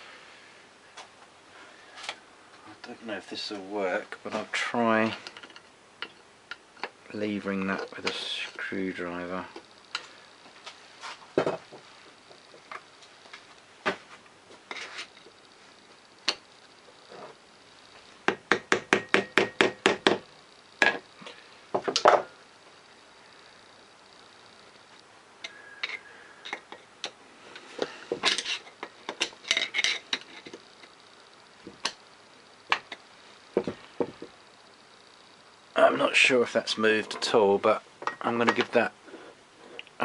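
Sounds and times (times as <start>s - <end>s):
metal clinks and scrapes: 28.2s - 30.6s.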